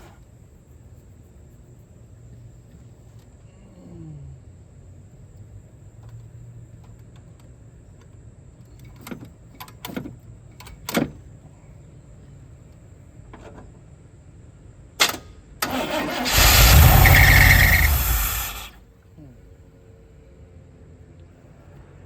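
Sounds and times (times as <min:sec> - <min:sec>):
starter cranking engine: 0:15.0 - 0:18.8
truck engine running loudly: 0:15.8 - 0:18.7.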